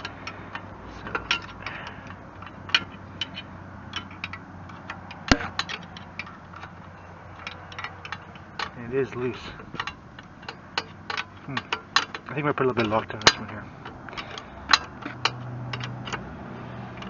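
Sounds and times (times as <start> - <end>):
wrench and metal parts clicking: 0.0 - 17.0
sharp metal knock: 5.3 - 5.8.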